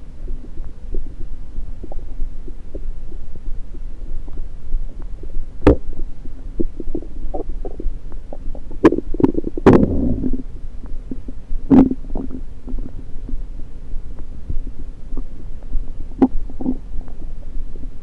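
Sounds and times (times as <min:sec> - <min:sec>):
steady low hum: 0:09.7 - 0:10.5.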